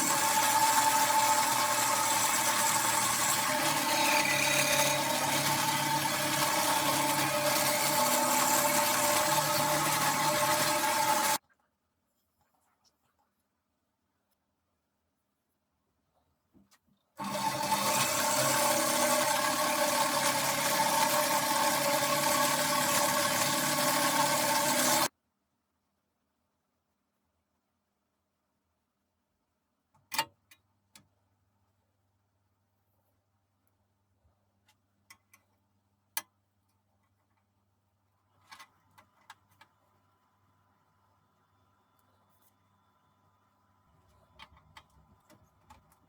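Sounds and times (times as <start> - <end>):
jigsaw running with whine: 0.0 - 11.4, 17.2 - 25.1.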